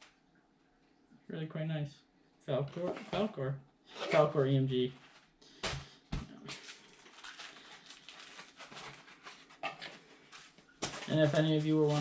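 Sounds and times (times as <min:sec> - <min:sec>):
packaging rustling: 0:06.5 - 0:12.0.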